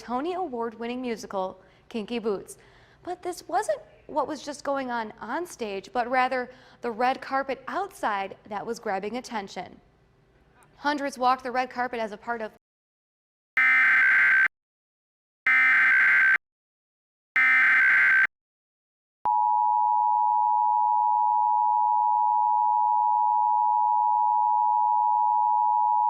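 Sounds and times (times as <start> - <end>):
digital data bursts: 13.6 - 14.5, 15.5 - 16.4, 17.4 - 18.3
two-tone attention signal: 13.6 - 14.5, 15.5 - 16.4, 17.4 - 18.3.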